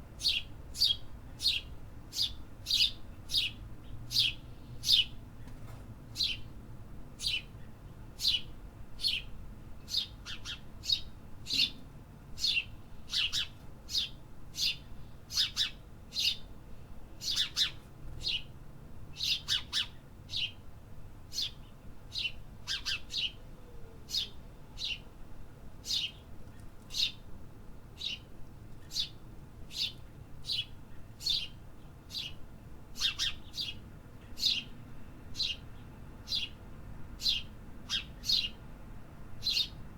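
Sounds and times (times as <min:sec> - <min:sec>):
birds chirping: 0:33.0 - 0:36.6, 0:37.2 - 0:38.6, 0:39.4 - 0:39.8.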